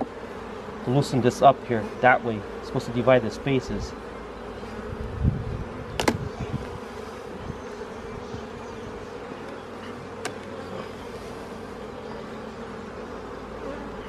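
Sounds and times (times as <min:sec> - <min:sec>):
honeybees buzzing: 0:00.0 - 0:14.0
low thumps: 0:04.9 - 0:06.8
sharp clicks of hive frames: 0:05.8 - 0:06.8, 0:09.2 - 0:11.0.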